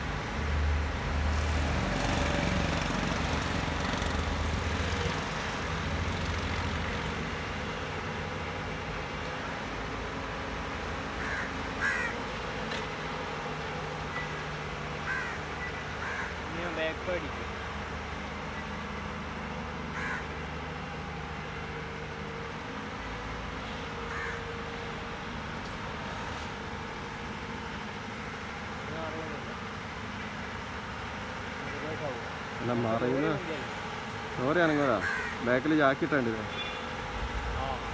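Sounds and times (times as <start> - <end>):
excavator diesel engine running: 0.0 - 15.7
diesel engine running: 0.0 - 37.9
crow-like calls: 11.1 - 12.5, 14.0 - 16.5, 19.9 - 20.7, 24.1 - 24.5, 34.6 - 35.7.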